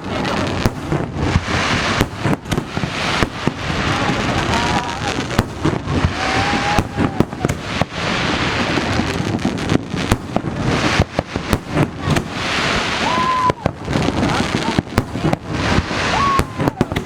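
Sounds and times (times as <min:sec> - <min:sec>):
fireworks bangs: 0:00.0 - 0:17.0
firework whistle: 0:03.9 - 0:08.6, 0:11.7 - 0:14.9, 0:15.6 - 0:17.0.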